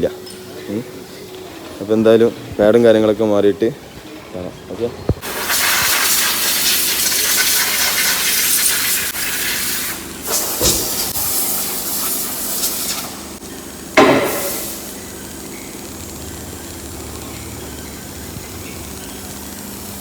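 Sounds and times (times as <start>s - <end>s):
compressed air blow gun hissing: 5.2s - 13.4s, 14.0s - 20.0s.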